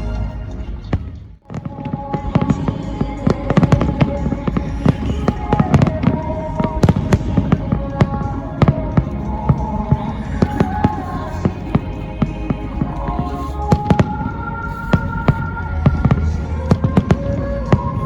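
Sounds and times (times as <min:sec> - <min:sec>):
music: 0:00.0 - 0:18.0
fireworks bursting and crackling: 0:00.8 - 0:18.0.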